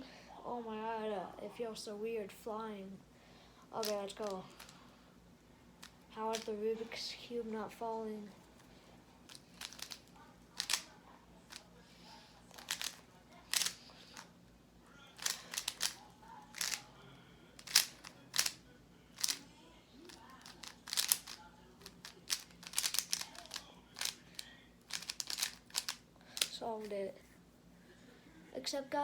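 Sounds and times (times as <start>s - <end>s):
puzzle cube plastic clicks: 9.3s - 10.9s, 12.5s - 13.8s, 15.2s - 16.8s, 17.6s - 18.6s, 19.2s - 19.4s, 20.1s - 26.5s.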